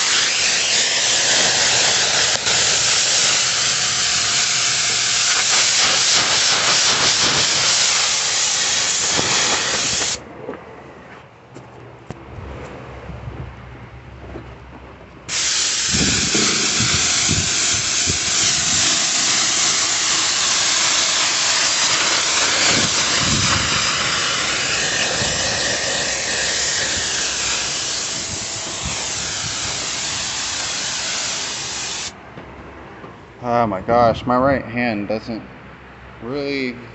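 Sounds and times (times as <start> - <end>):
water sprayer hissing: 0.0 - 10.2, 15.3 - 32.2.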